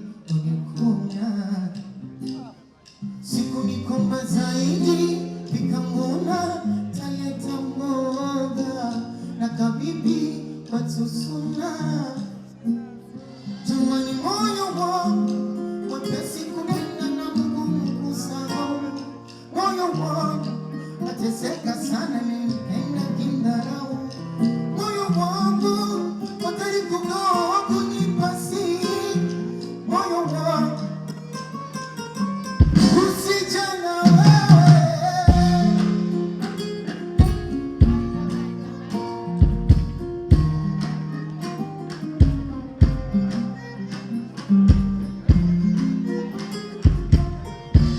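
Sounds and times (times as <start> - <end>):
person singing: 0.0 - 47.9
guitar and bass notes: 27.6 - 47.9
heavy low beats: 32.6 - 33.3, 34.4 - 38.4, 39.4 - 40.8, 42.2 - 43.2, 44.7 - 45.8, 46.9 - 47.9.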